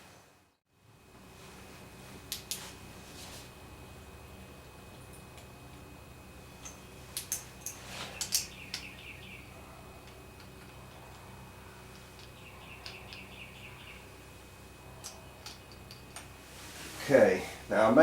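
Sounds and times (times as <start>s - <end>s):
steady low hum: 0.0s - 18.0s
metallic clicks of engine parts: 6.6s - 9.1s, 10.0s - 11.3s, 11.9s - 13.9s, 15.0s - 16.4s.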